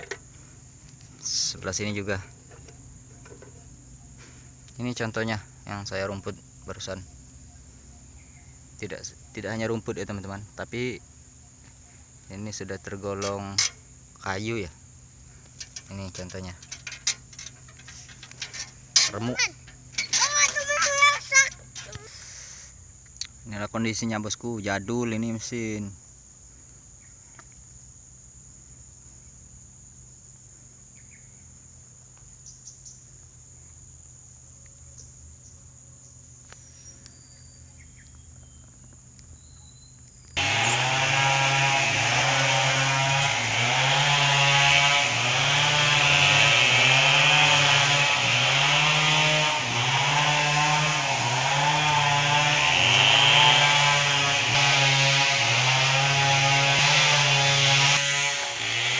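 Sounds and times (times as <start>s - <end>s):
grass cutter small engine running: 0.0s - 0.3s, 13.1s - 13.8s, 15.5s - 22.4s, 40.4s - 58.9s
insects chirring: 0.0s - 41.2s.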